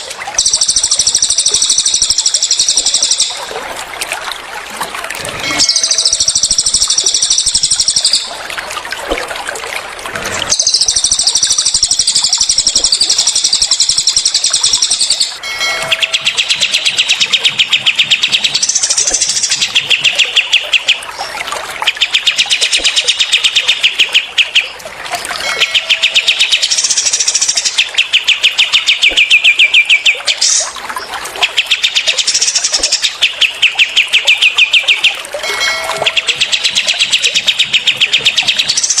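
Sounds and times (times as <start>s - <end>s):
high-pitched bird bursts: 5.4s - 8.3s
songbirds trilling: 10.5s - 24.8s, 25.4s - 30.8s.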